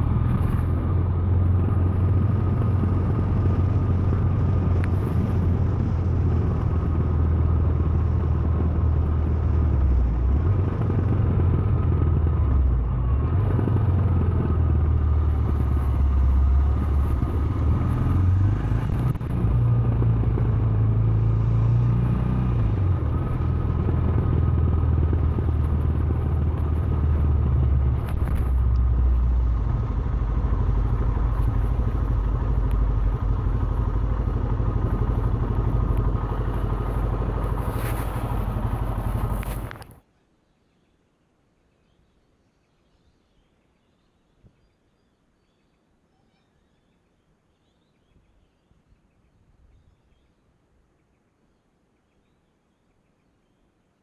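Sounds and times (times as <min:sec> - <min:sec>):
motorcycle engine running: 0:00.0 - 0:40.0.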